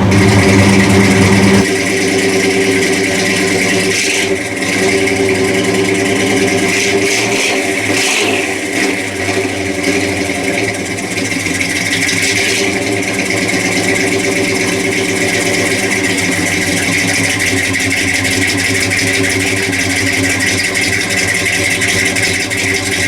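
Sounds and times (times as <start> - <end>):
car engine idling: 0.0 - 23.0.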